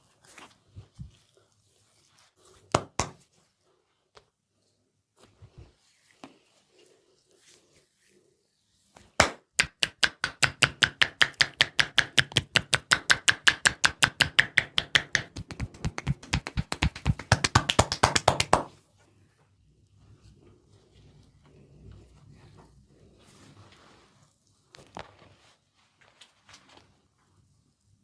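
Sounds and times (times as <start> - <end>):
hands beating on head: 2.8 - 3.2, 9.2 - 18.7.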